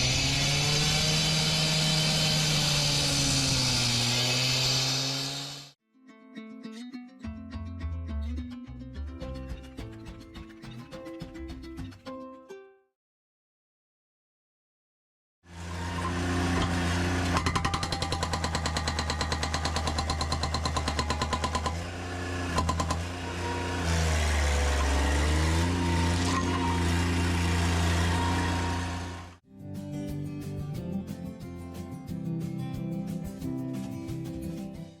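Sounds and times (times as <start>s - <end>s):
strummed guitar music with beat: 6.4s - 12.5s, 29.5s - 35.0s
hydraulic breaker hammering: 15.9s - 29.1s
construction machine engine running: 21.8s - 29.4s.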